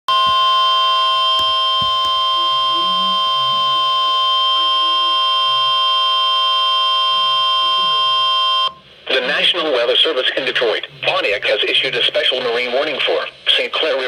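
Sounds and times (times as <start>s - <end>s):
electronic alert tone: 0.1s - 6.2s.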